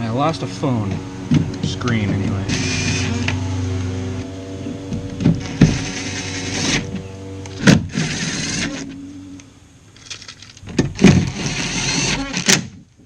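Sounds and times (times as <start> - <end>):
cordless drill running: 2.5 - 3.8, 5.3 - 7.0, 7.6 - 8.9, 11.0 - 12.6.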